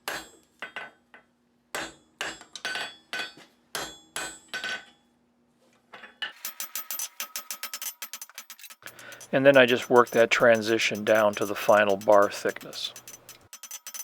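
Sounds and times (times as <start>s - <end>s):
hammer blows on anvil: 8.8s - 13.5s.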